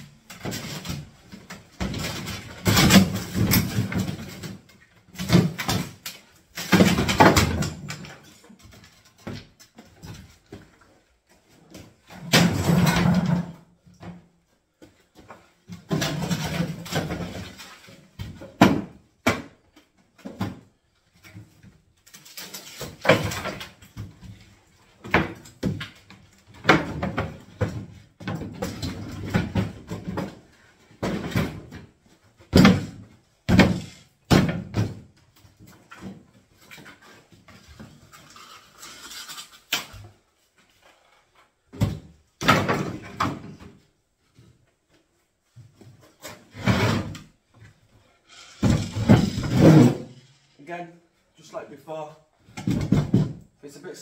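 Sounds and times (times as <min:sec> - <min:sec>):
kitchen units banging and knocking: 0:00.0 - 0:10.8, 0:11.7 - 0:38.3, 0:41.6 - 0:43.9, 0:45.6 - 0:54.0
wood scraping and creaking: 0:35.3 - 0:41.8, 0:45.6 - 0:53.4.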